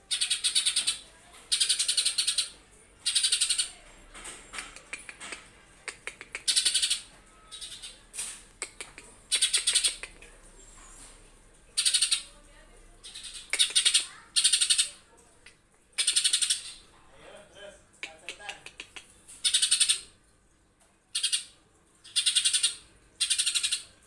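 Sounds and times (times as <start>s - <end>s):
bird singing in rapid bursts: 0.1s - 3.7s, 6.4s - 8.0s, 9.3s - 10.0s.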